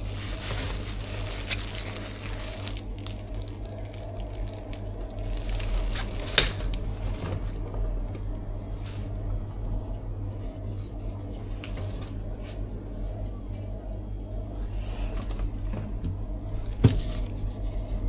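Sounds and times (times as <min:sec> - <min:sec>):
steady low hum: 0:00.0 - 0:18.0.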